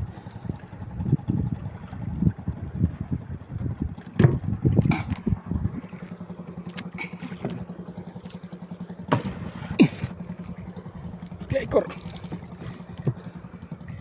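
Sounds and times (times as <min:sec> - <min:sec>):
boat engine running: 0:00.0 - 0:14.0
low thuds and knocks: 0:03.6 - 0:05.9, 0:09.1 - 0:10.8, 0:12.1 - 0:14.0.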